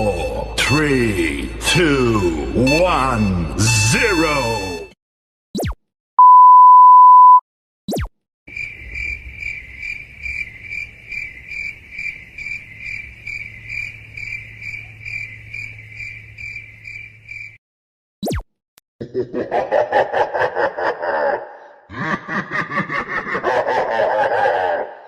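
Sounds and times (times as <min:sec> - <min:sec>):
high pulsing cricket chirp: 0:08.5 - 0:17.6.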